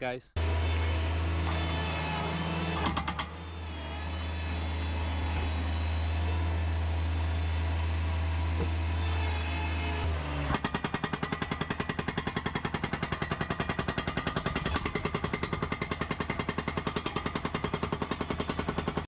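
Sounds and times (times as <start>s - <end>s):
engine running with deep hum: 0.4s - 10.8s.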